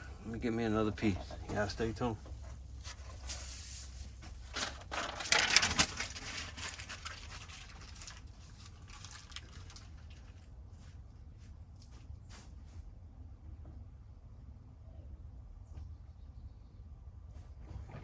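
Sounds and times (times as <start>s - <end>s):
material rustling and crinkling: 1.0s - 10.9s.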